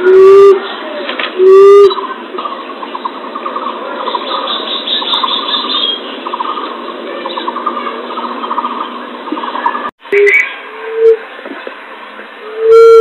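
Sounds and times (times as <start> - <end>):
birds trilling: 1.9 - 11.8.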